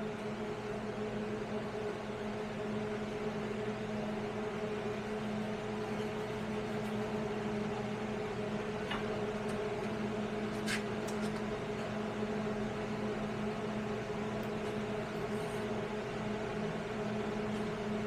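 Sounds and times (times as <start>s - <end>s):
steady machine hum: 0.0s - 18.0s.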